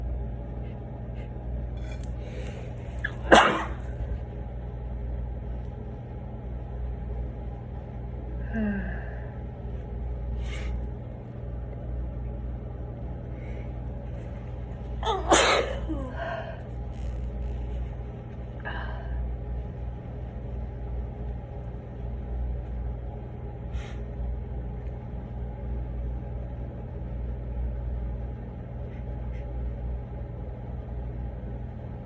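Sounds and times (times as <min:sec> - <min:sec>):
steady low hum: 0:00.0 - 0:32.0
person sneezing into tissue: 0:02.4 - 0:04.2, 0:10.4 - 0:10.8, 0:14.9 - 0:17.1.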